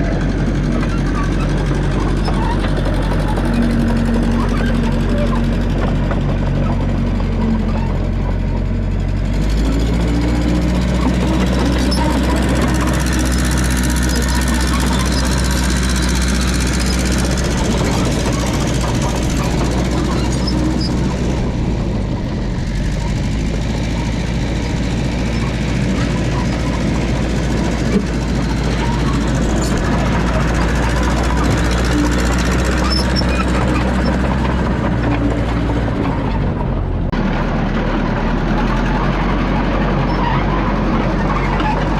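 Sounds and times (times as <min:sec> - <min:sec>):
crawler dozer engine running: 0:00.0 - 0:41.9.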